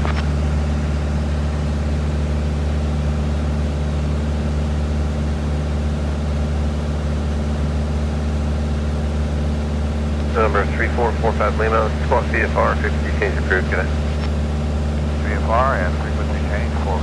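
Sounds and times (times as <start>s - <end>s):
airplane engine droning: 8.0s - 17.0s.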